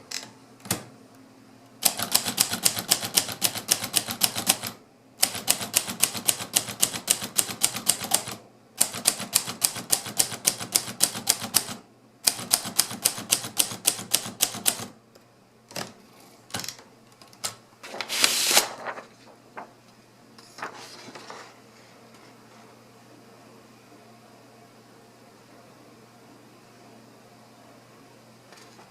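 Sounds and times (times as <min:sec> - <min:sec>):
typewriter typing fast: 0:01.8 - 0:14.9.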